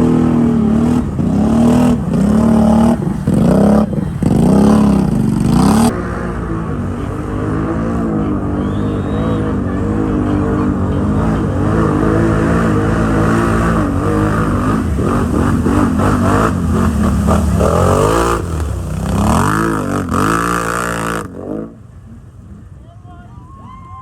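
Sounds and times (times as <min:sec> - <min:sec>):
atv engine running under load: 0:00.0 - 0:07.3.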